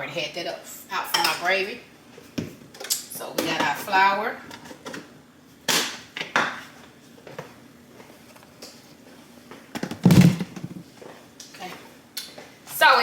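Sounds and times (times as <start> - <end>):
kitchenware knock: 9.8 - 10.8.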